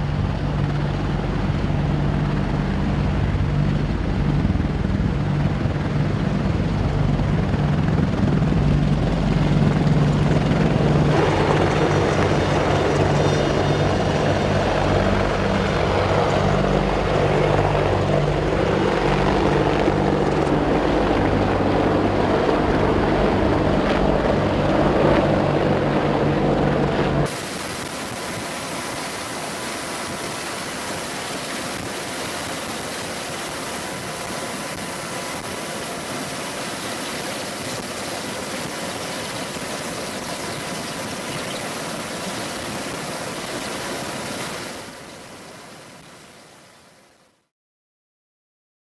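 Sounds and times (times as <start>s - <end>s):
steady engine hum: 0.0s - 27.3s
turbine engines rushing: 0.0s - 29.1s
helicopter rotors beating: 0.0s - 45.6s.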